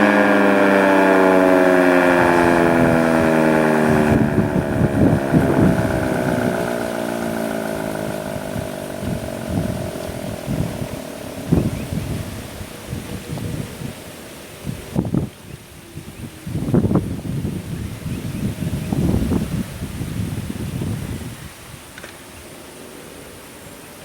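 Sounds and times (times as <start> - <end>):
warning siren winding down: 0.0 - 13.8
wind gusts on microphone: 0.0 - 23.4.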